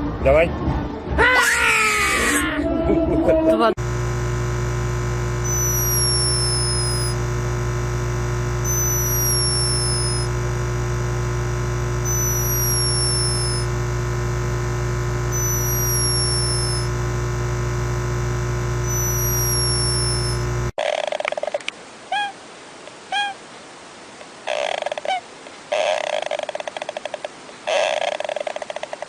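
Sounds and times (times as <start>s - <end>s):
electronic drone: 3.8s - 20.7s
falling high-pitched chirp: 5.4s - 7.2s, 8.6s - 10.3s, 12.1s - 13.7s, 15.3s - 16.9s, 18.9s - 20.4s.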